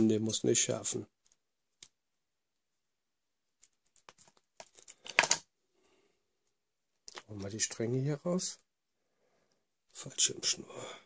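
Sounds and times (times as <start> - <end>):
paracord rustling: 1.1 - 7.8.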